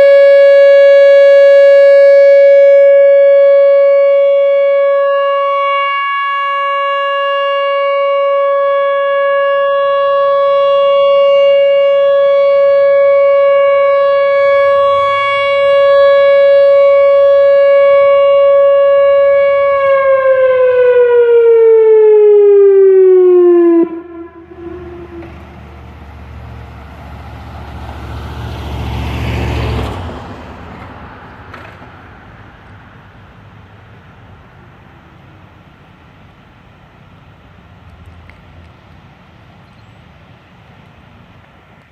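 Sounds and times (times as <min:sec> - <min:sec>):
outdoor warning siren: 0:00.0 - 0:30.9
vehicle passing: 0:23.7 - 0:34.8.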